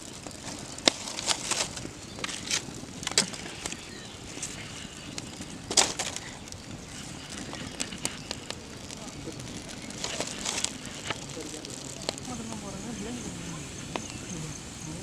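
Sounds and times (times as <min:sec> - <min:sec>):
wood fire crackling and popping: 0:00.0 - 0:15.0.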